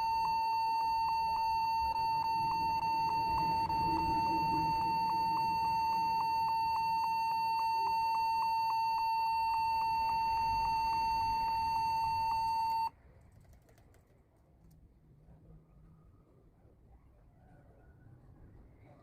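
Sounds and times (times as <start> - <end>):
high-pitched computer beep: 0.0 - 12.9.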